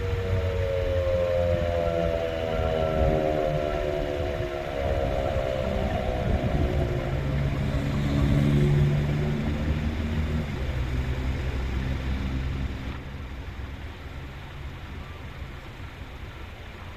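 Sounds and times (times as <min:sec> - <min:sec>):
siren growl sliding down: 0:00.0 - 0:11.8
passing vehicle engine hum: 0:00.0 - 0:16.9.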